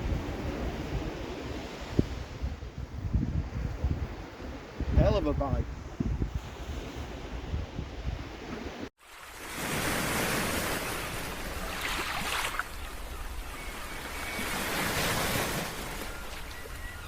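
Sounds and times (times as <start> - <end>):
sea waves washing onto shore: 8.8 - 17.0.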